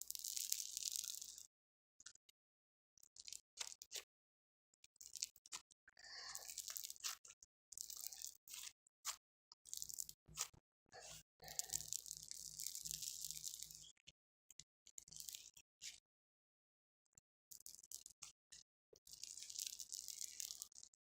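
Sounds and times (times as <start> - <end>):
slime squelching: 5.0 - 13.8.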